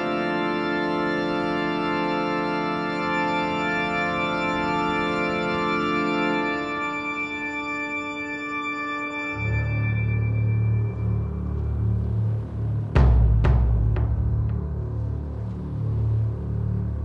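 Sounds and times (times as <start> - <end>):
sustained organ-like chord: 0.0 - 12.9.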